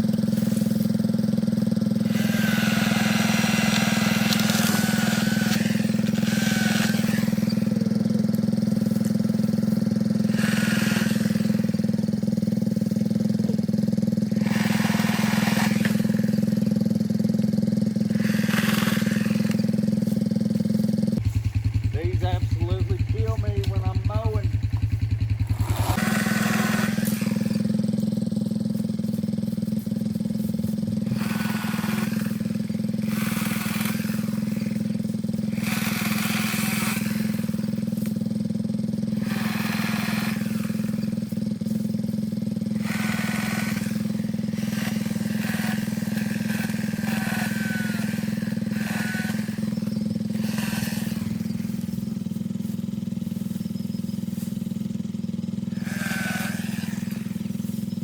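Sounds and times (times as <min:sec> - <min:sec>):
rasping noise bursts: 0:00.0 - 0:28.0, 0:29.0 - 0:38.2, 0:38.9 - 0:53.6, 0:55.6 - 0:58.0
motor running at high speed: 0:00.0 - 0:58.0.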